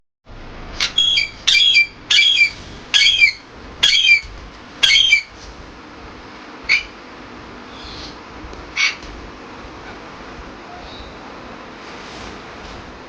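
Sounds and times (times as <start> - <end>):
parrot squawking: 0.8 - 5.3, 6.7 - 7.0, 7.7 - 9.0.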